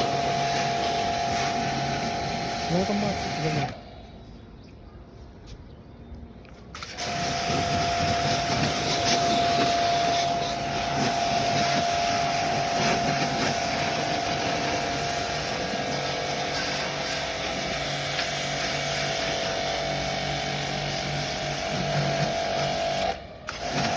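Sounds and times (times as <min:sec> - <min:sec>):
machine motor hiss and whine: 0:06.8 - 0:23.9.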